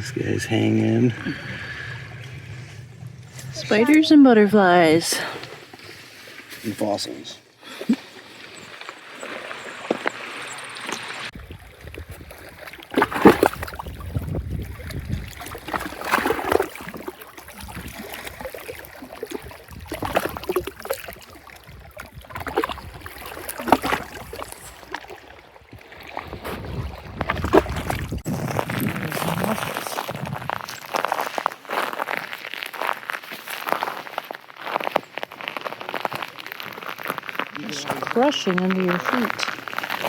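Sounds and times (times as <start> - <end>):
wind rumbling on microphone: 0.0 - 4.9, 11.3 - 24.9, 25.7 - 31.2
waves lapping on rocks: 7.6 - 40.0.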